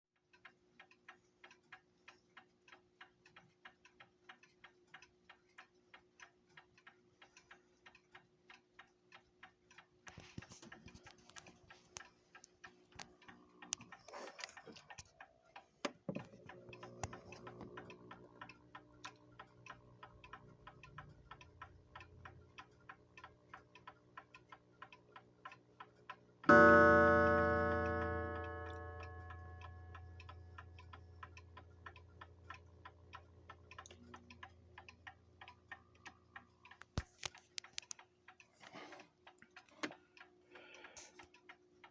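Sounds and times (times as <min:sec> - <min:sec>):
alarm clock ticking: 0:16.4 - 0:36.8
loud alarm ring: 0:26.5 - 0:29.0.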